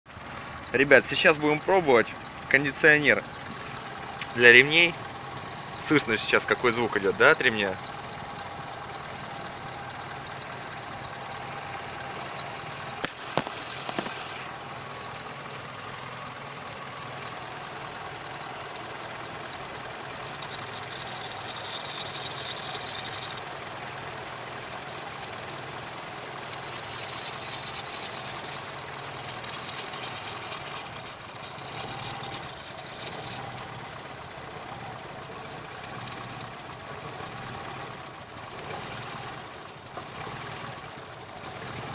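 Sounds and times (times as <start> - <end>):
belt squealing: 0.0 - 23.5, 26.6 - 33.9
car engine idling: 0.0 - 41.9.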